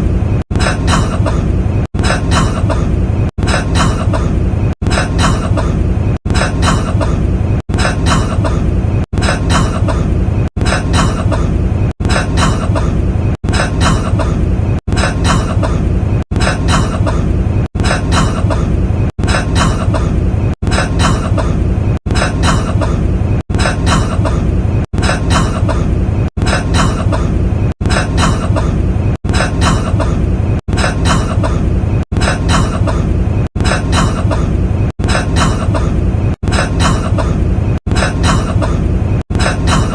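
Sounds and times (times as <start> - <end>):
man coughing: 0.5 - 30.2, 30.8 - 39.9.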